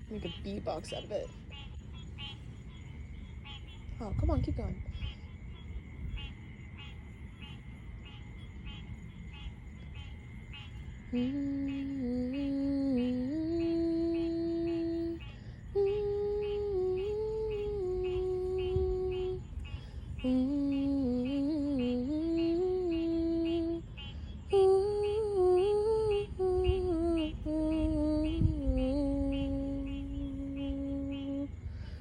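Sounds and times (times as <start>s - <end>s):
frogs calling: 0.0s - 32.0s
person humming: 11.1s - 19.5s, 20.2s - 23.9s, 24.5s - 31.6s.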